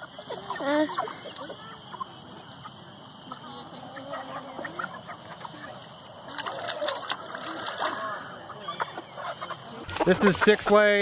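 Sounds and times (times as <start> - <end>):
chickens clucking: 0.0 - 11.0
scratchy noise: 9.8 - 10.8.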